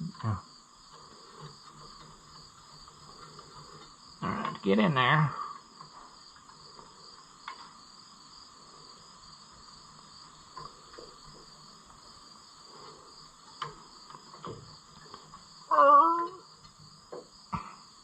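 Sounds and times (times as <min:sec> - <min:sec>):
insects chirring: 0:00.0 - 0:18.0
faint clicks and knocks: 0:00.9 - 0:04.6, 0:05.5 - 0:07.8, 0:09.9 - 0:15.6, 0:16.3 - 0:17.4.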